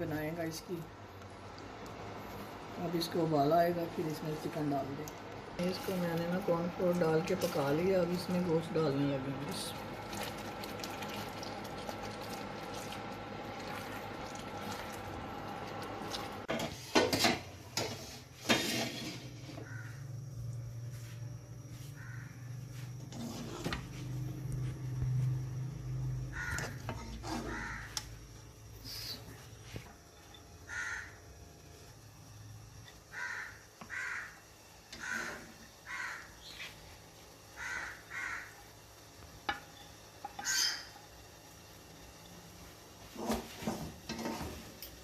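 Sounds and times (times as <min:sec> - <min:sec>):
low hum: 0:19.3 - 0:30.4
crows cawing: 0:19.6 - 0:20.1, 0:22.0 - 0:22.5, 0:26.3 - 0:26.8, 0:27.4 - 0:28.1, 0:30.7 - 0:31.2, 0:33.1 - 0:34.4, 0:35.0 - 0:36.6, 0:37.6 - 0:38.6, 0:40.4 - 0:40.9.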